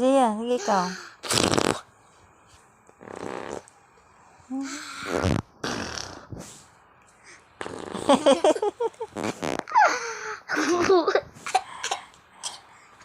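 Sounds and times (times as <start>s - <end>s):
fart sounds: 1.2s - 1.9s, 3.0s - 3.7s, 5.0s - 6.4s, 7.6s - 8.3s, 9.1s - 9.8s.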